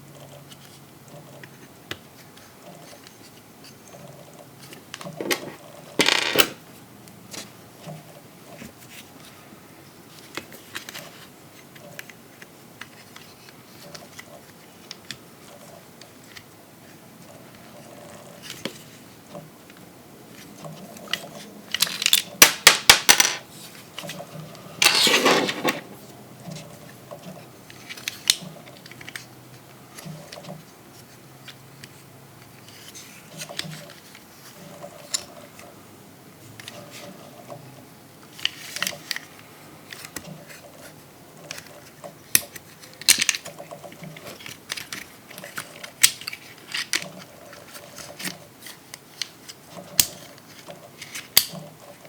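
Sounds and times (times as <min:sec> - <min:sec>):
short rasping scrape: 0:24.8 - 0:25.9.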